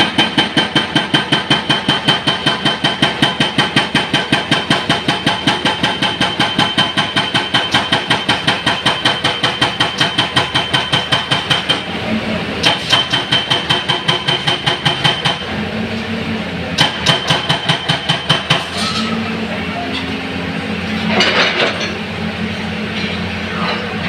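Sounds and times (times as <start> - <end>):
hydraulic breaker hammering concrete: 0.0 - 12.0, 12.6 - 15.7, 16.7 - 18.8.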